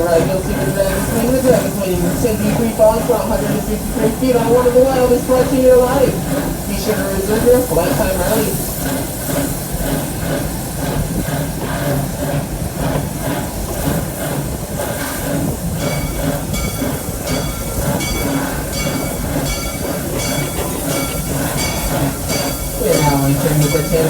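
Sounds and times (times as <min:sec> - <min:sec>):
steam hiss: 0:00.0 - 0:24.0
train wheels rumbling: 0:00.0 - 0:24.0
bell ringing: 0:15.8 - 0:24.0.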